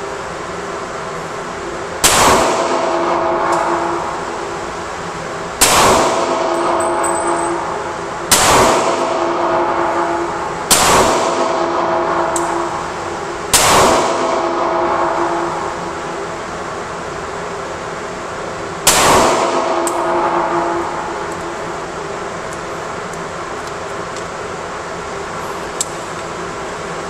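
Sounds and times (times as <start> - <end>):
steady hum: 0.0 - 27.0
pistol shots with echo: 2.0 - 3.9, 5.6 - 7.6, 8.3 - 12.6, 13.5 - 15.6, 18.9 - 21.0.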